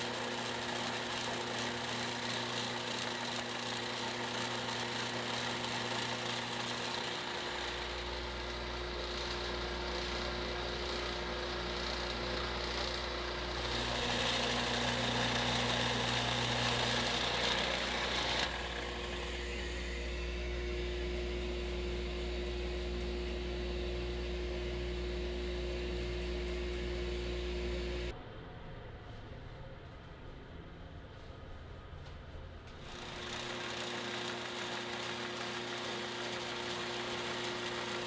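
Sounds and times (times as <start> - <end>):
power tool motor running: 0.0 - 28.1, 32.8 - 38.0
steel grinding against tool: 13.5 - 19.7.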